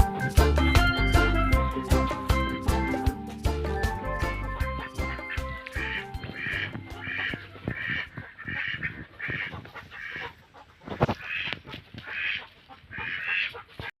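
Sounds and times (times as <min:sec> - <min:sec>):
chickens calling: 0:00.0 - 0:13.9.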